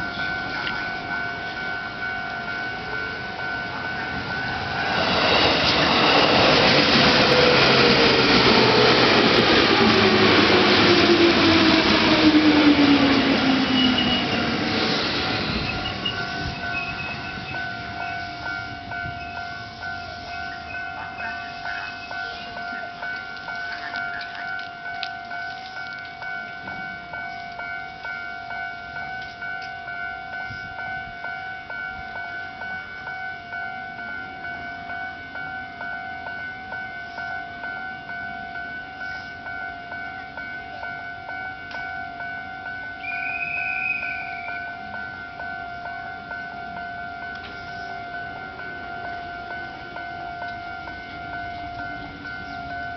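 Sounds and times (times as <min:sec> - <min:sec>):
electric train passing: 0:00.0 - 0:52.9
level crossing warning bell: 0:00.0 - 0:52.9.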